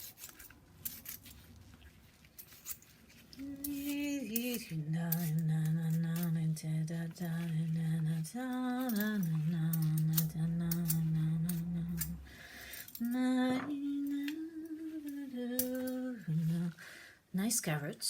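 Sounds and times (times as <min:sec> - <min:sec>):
vegetables being peeled: 0:00.0 - 0:13.3
person humming a slow tune: 0:03.4 - 0:12.3, 0:13.0 - 0:16.8.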